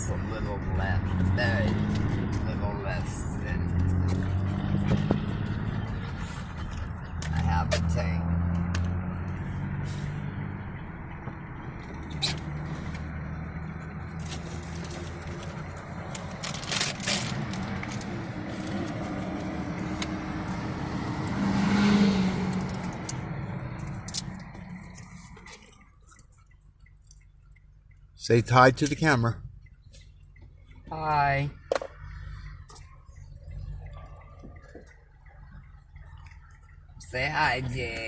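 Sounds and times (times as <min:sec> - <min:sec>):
car engine hum and road noise: 0:00.0 - 0:38.0.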